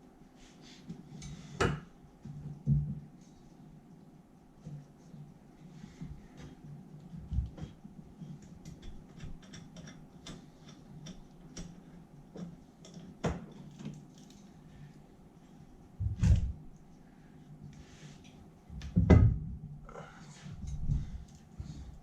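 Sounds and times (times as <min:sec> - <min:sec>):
hand tools clicking and tapping: 0:06.0 - 0:14.4.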